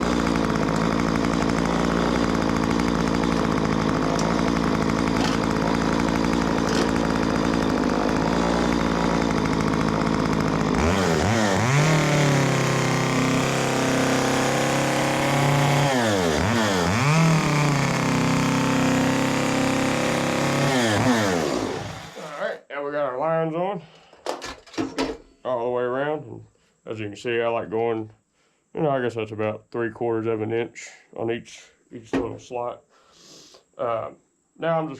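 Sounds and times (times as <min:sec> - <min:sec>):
chainsaw cutting wood: 0:00.0 - 0:22.5.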